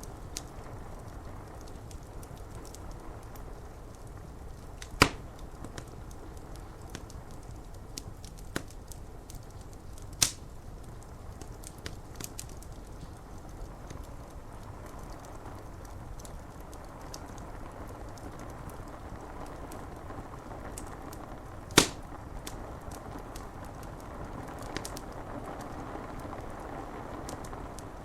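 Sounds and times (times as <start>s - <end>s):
rain on window glass: 0.0s - 28.0s
wood fire crackling and popping: 0.0s - 28.0s
log loud sharp pop: 5.0s - 5.3s, 10.2s - 10.4s, 21.8s - 22.1s.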